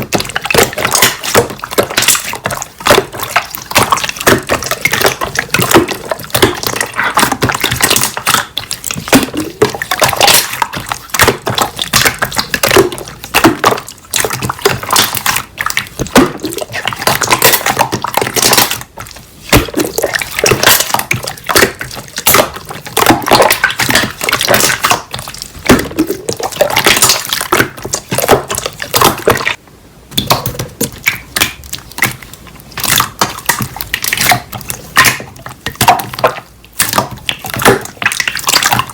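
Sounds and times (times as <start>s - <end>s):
slime squelching by hand: 0.0s - 38.9s.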